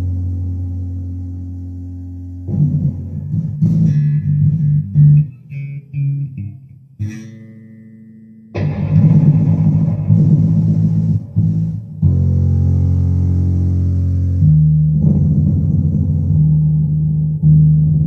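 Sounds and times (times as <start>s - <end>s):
electric bass guitar: 0.0s - 18.0s.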